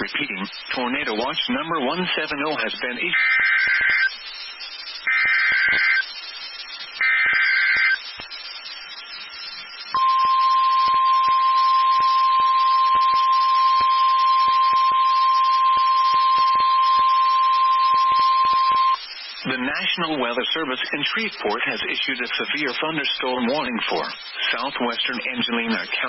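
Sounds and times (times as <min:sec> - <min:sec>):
radio hiss and crackle: 0:00.0 - 0:26.0
buzzing data bursts: 0:03.1 - 0:19.4
steady alarm tone: 0:09.4 - 0:19.0.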